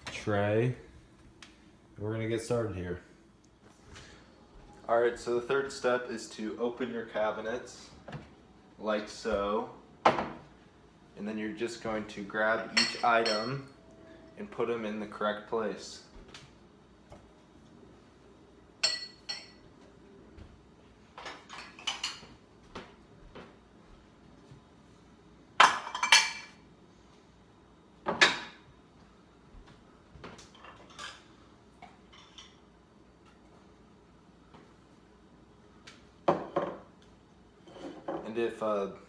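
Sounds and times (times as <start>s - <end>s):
dishes and cutlery clattering: 12.8s - 13.7s, 21.1s - 22.4s, 25.6s - 26.6s, 30.4s - 32.6s.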